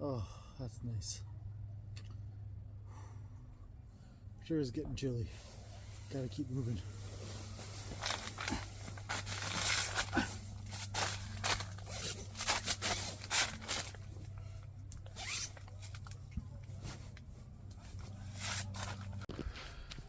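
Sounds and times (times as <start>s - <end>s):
steady low hum: 0.0s - 20.0s
rustling: 5.3s - 19.9s
zipper rasping: 7.0s - 14.1s, 15.0s - 16.0s.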